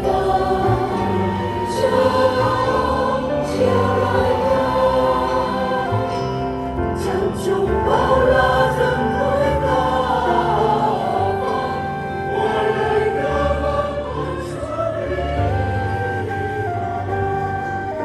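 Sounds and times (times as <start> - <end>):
choir singing sacred music: 0.0 - 18.0
sustained instrumental accompaniment: 0.0 - 18.0.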